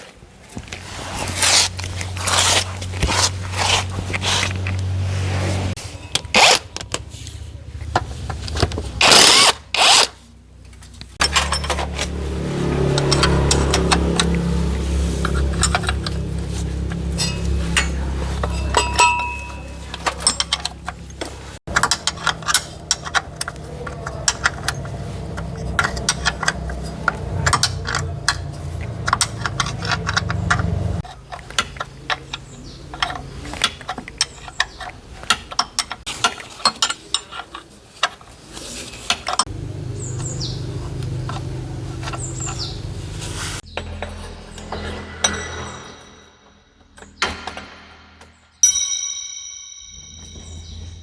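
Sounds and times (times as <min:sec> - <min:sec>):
metal tools clinking and tapping: 0:10.6 - 0:51.0.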